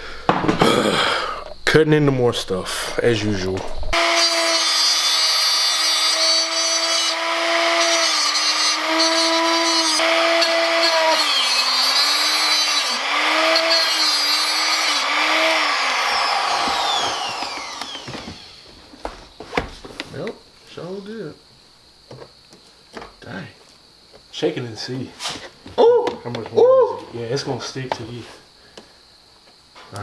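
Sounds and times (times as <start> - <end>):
power tool cutting whine: 4.0 - 18.8.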